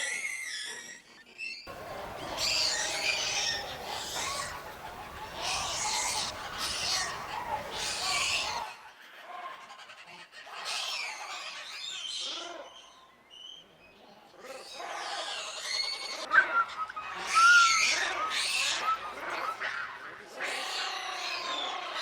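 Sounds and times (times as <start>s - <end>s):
monkeys crying: 1.7s - 8.7s.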